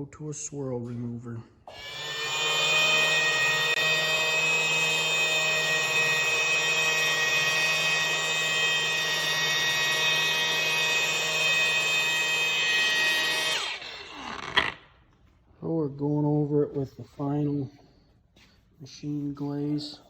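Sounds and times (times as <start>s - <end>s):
power buffer whining: 1.7s - 14.8s.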